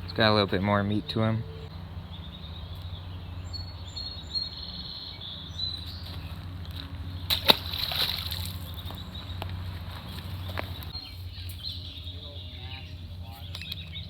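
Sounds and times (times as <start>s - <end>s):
birds chirping: 0.0s - 14.0s
sharp splash in water: 7.3s - 8.7s.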